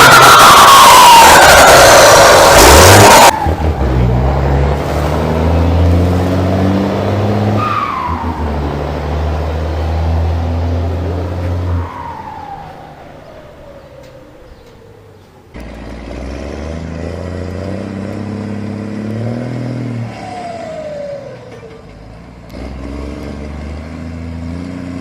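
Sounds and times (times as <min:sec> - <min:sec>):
turbocharger whistling: 0:00.0 - 0:04.4, 0:09.7 - 0:14.7
diesel truck engine revving: 0:00.0 - 0:25.0.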